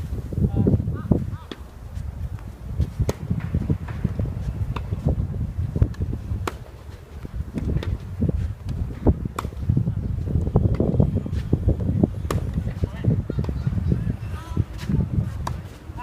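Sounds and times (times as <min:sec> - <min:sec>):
wind buffeting microphone: 0:00.0 - 0:16.0
tennis racket hitting ball: 0:02.8 - 0:05.1, 0:05.8 - 0:09.7, 0:12.2 - 0:13.7, 0:14.7 - 0:15.8.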